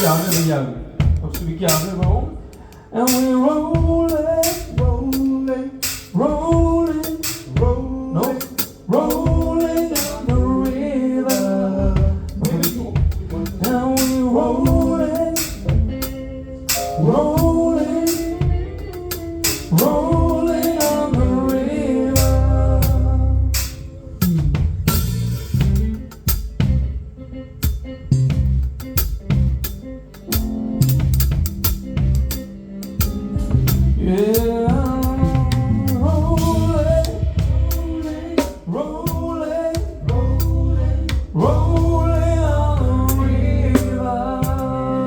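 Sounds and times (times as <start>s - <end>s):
person singing: 1.7s - 24.6s, 32.0s - 45.0s
heavy low bass note: 16.8s - 38.3s, 40.0s - 45.0s.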